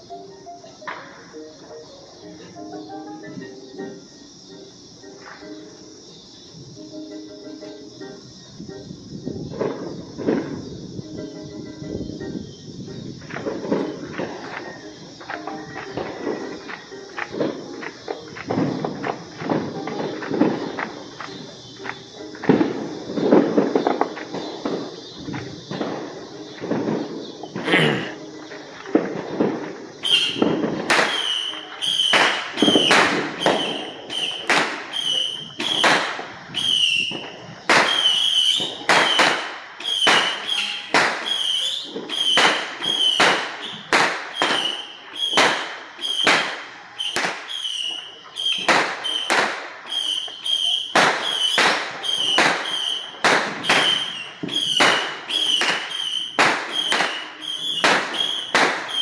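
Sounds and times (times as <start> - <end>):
firecracker bangs: 30.1 - 59.0.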